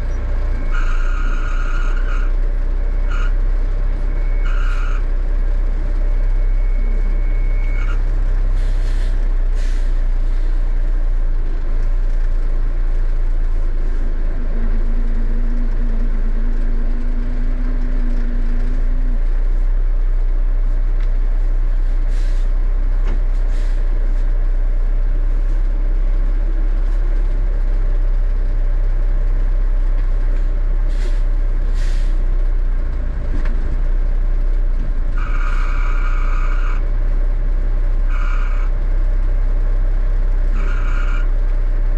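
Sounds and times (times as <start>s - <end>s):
truck diesel engine under load: 0.0s - 41.9s
air brake hisses: 8.6s - 10.5s, 22.1s - 22.5s, 30.9s - 32.2s.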